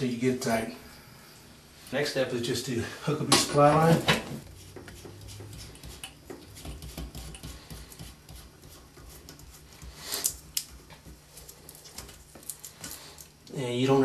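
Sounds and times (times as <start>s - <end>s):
light rubbing of plumbing parts: 3.1s - 13.4s.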